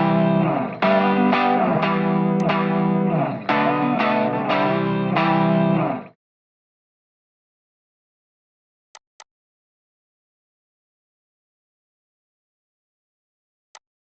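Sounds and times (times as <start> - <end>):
distorted electric guitar chords: 0.0 - 6.1.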